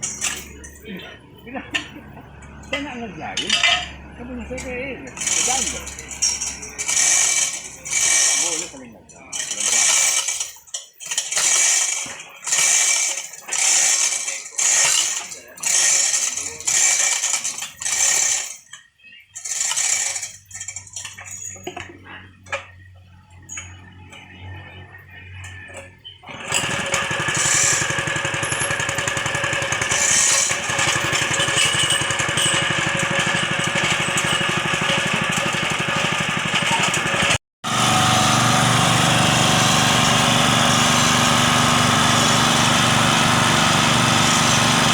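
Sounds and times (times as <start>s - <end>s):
small engine running: 0.0s - 10.5s, 23.2s - 44.9s.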